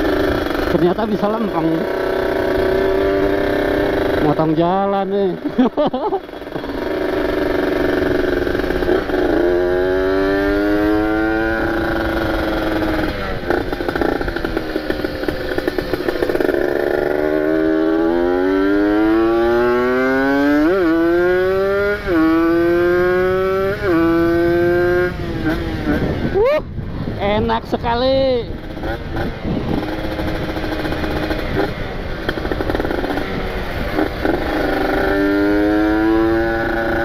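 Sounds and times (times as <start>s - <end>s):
motorcycle engine revving: 0.0s - 37.0s
wind rumble on microphone: 23.0s - 34.2s.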